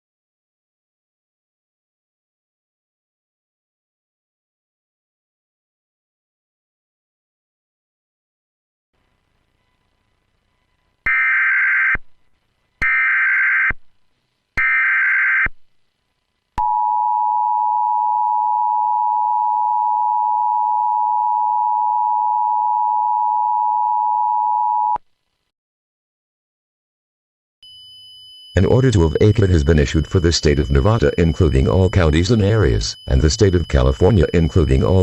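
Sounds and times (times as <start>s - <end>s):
two-tone attention signal: 27.6s - 35.0s
data header bursts: 28.6s - 35.0s.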